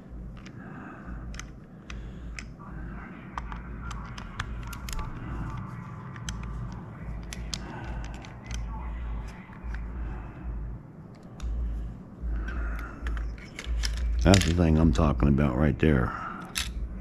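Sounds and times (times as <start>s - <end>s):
plastic parts clicking and tapping: 0.3s - 0.6s, 1.3s - 2.6s, 3.3s - 8.7s, 12.4s - 15.1s, 16.4s - 16.8s.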